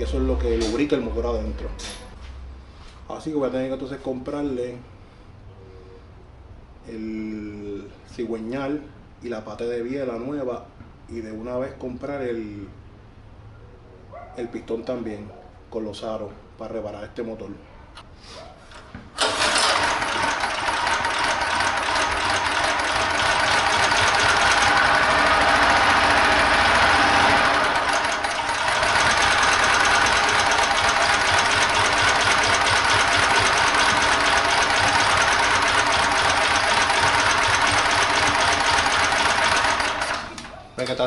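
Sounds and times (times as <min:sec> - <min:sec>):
small engine running with knock: 0:19.2 - 0:40.5.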